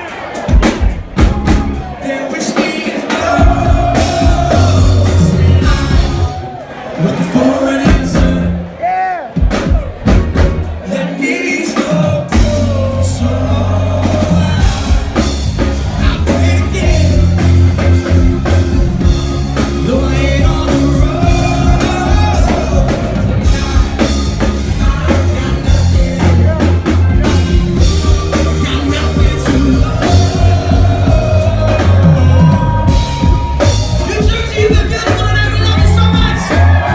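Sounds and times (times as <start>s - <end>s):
lead vocal singing: 0.0s - 36.9s
live rock band playing: 0.0s - 36.9s.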